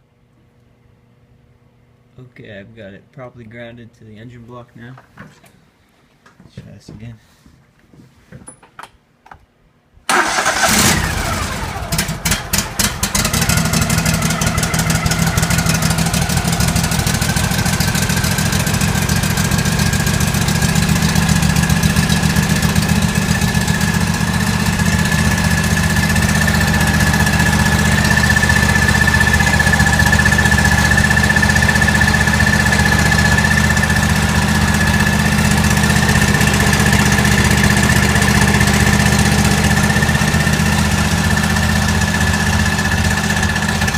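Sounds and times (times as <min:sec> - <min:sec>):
lawn tractor engine starting and running: 0:10.1 - 0:43.9.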